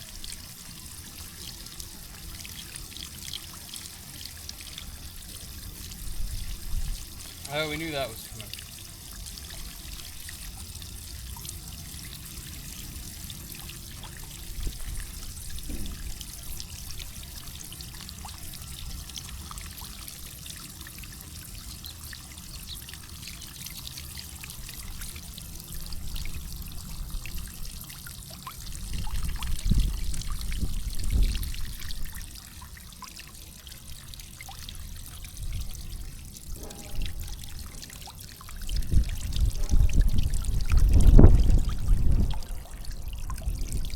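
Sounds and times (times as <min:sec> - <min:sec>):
water trickling and pouring: 0:00.0 - 0:43.9
low rumbles: 0:36.6 - 0:43.9.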